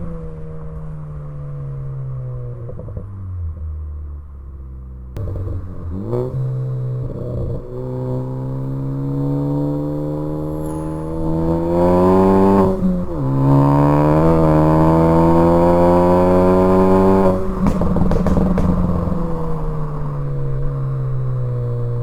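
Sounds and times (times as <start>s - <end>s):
exhaust pops and crackles: 5.2s - 8.8s, 16.6s - 22.0s
car engine revving: 5.2s - 22.0s.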